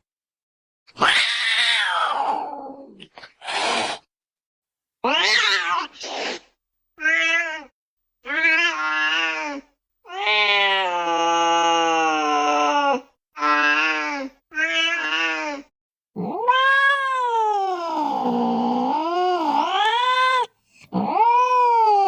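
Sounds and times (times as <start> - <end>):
cat meowing: 0.9 - 2.9, 5.0 - 6.0, 7.0 - 18.4.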